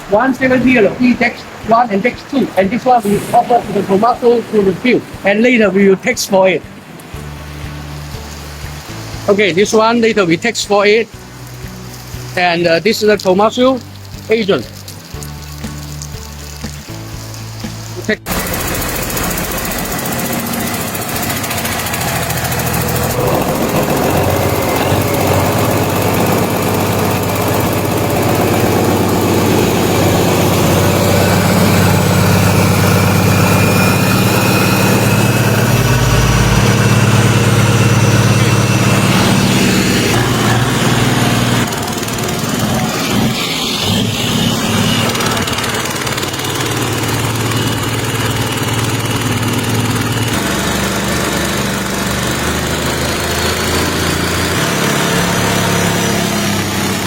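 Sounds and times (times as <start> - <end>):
engine running: 0.0 - 57.0.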